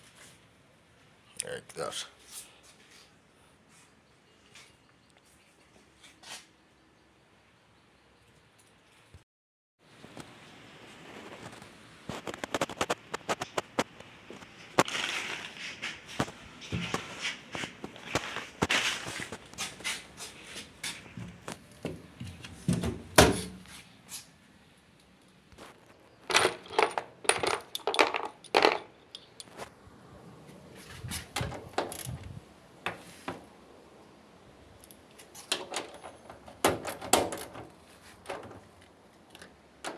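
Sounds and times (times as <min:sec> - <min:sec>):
hard parts clicking and knocking: 0:21.1 - 0:23.7, 0:26.2 - 0:29.6.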